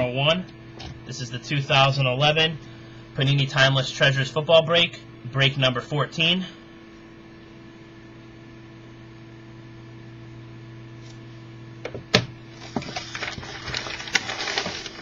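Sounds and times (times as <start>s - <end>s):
steady electrical hum: 0.0s - 15.0s
packaging crinkling and rustling: 12.5s - 15.0s
packaging clicks and snaps: 12.6s - 15.0s.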